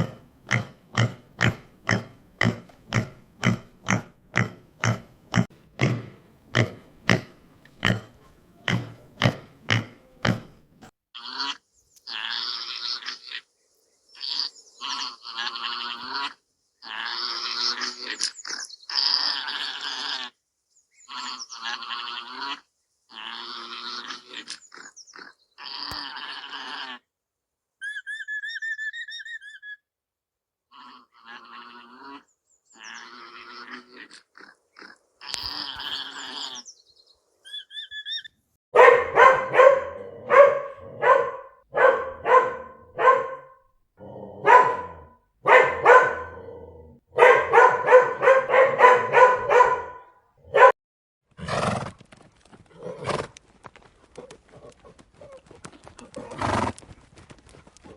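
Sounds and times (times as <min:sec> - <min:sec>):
harsh noisy animal calls: 0:14.2 - 0:20.4, 0:21.0 - 0:27.1, 0:30.7 - 0:36.7
quick sharp barks: 0:38.8 - 0:43.6, 0:44.4 - 0:46.5, 0:47.2 - 0:50.7.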